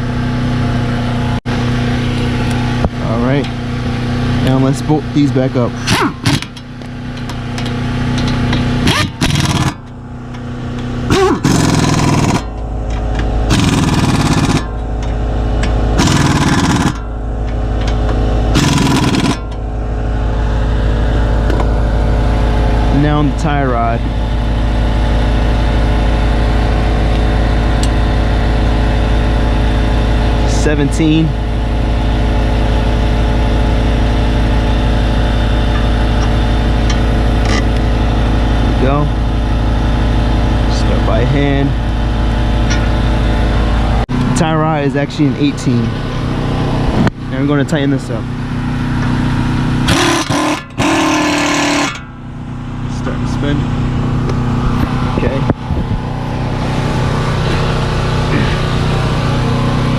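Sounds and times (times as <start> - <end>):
engine idling: 0.0 - 59.9
steady low hum: 0.0 - 59.9
impact wrench bursts: 5.7 - 10.4, 11.0 - 19.6, 49.8 - 52.2.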